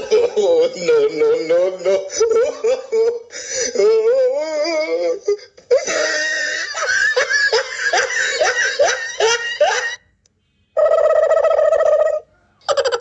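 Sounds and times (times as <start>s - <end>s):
high repeated laugh: 0.0s - 10.0s.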